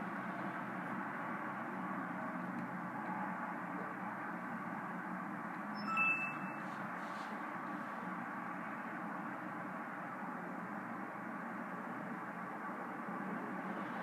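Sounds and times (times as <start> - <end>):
high electronic chime: 5.8 - 6.6.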